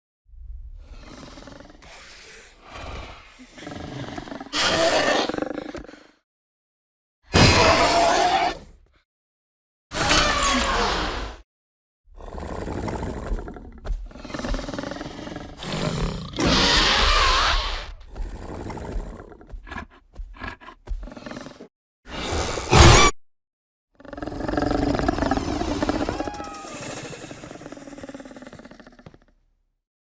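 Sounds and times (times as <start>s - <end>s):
creature growling roaring and screeching: 7.4s - 8.6s, 10.0s - 11.4s, 15.6s - 19.2s, 22.1s - 23.1s, 24.1s - 28.1s.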